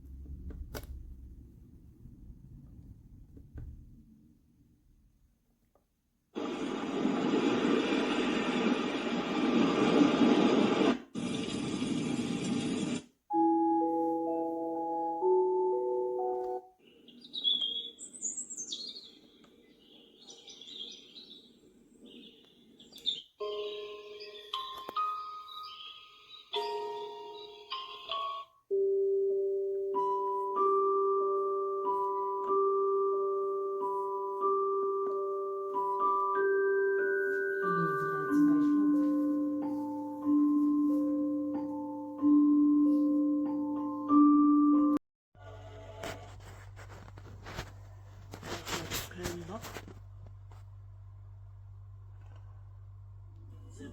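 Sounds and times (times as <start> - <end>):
alarm clock melody: 13.3 - 16.7, 23.4 - 45.0
recorded birdsong through small speaker: 16.7 - 28.6, 53.5 - 53.9.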